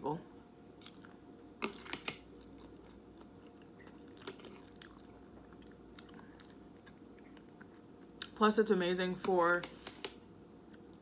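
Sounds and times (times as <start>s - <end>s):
person chewing noodles: 0.8s - 8.4s.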